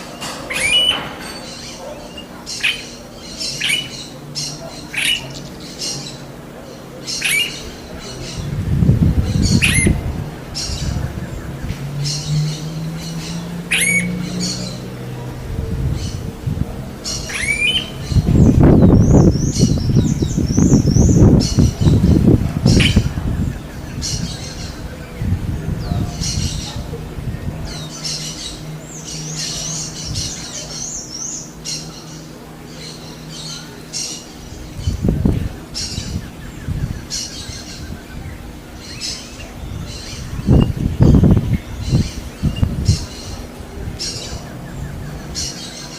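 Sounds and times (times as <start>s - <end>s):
bird whining calls: 0.0s - 15.0s, 17.0s - 27.0s.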